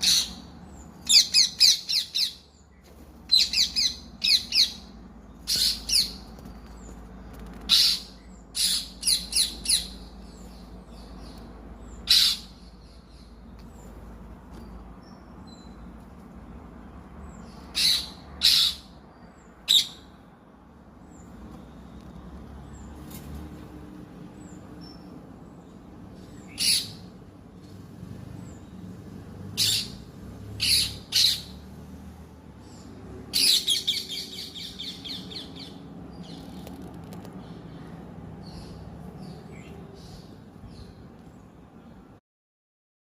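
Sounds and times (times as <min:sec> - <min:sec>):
parrot calling: 0:00.0 - 0:02.5, 0:12.0 - 0:12.7, 0:17.7 - 0:18.9
parrot chirps: 0:12.0 - 0:12.6.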